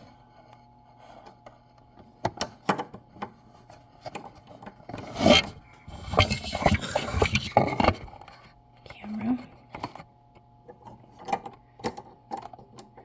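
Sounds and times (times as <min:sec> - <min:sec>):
rubbing and scraping: 0:05.0 - 0:08.4.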